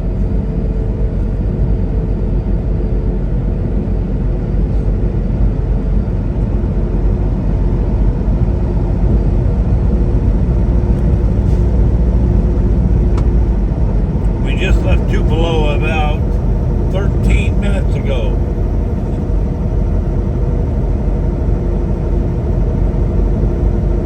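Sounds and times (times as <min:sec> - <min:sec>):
truck engine and road rumble: 0:00.0 - 0:24.0
faint steady tones: 0:11.8 - 0:20.2.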